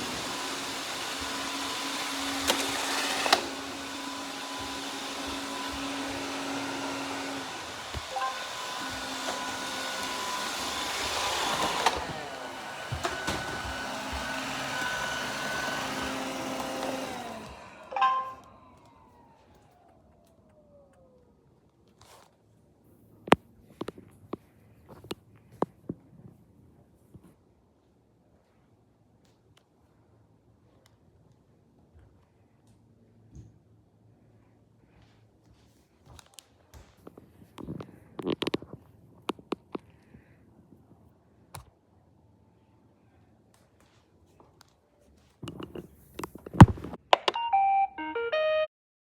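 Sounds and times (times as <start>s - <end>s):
vacuum stopping with a knock: 0.0s - 17.9s
robot vacuum whirring: 0.0s - 20.4s
motor winding down whine: 0.0s - 21.3s.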